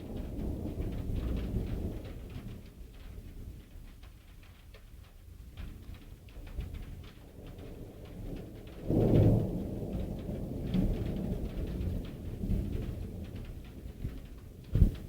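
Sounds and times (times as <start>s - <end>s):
thunder clap and rumbling: 0.0s - 2.7s, 7.2s - 15.0s
rain pattering and dripping: 0.0s - 15.0s.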